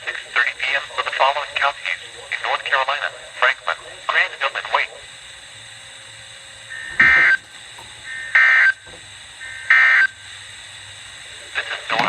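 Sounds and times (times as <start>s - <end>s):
screeching data squawks: 6.6s - 10.2s.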